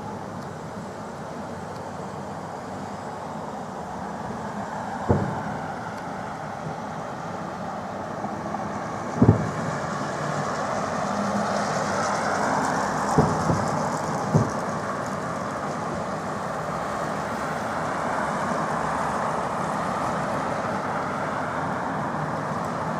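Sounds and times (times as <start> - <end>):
city traffic hum: 0.0 - 22.9
fireworks booms: 5.0 - 5.7, 9.2 - 9.9, 13.0 - 15.2.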